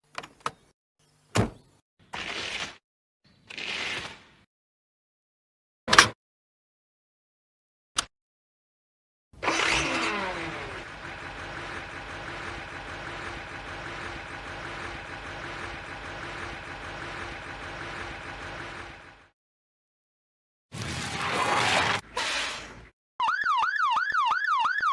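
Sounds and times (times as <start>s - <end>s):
cartoon engine starting and idling: 9.4s - 19.3s.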